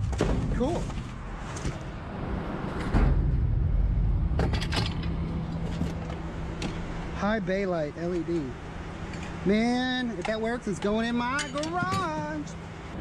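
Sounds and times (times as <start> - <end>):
objects clattering in dumpster: 0.0 - 1.8
steady low rumble: 0.0 - 10.2.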